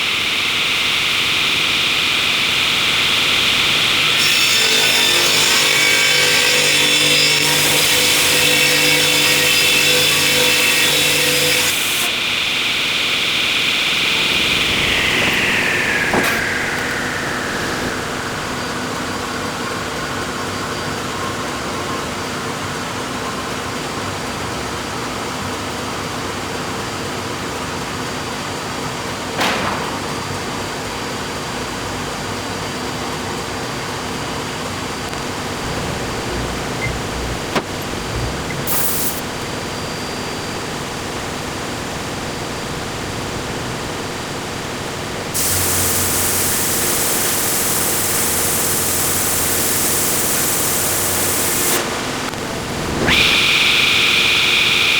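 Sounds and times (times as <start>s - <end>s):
machinery hum: 0.0s - 20.8s, 34.8s - 54.9s
rushing noise: 12.1s - 20.2s, 35.0s - 47.0s.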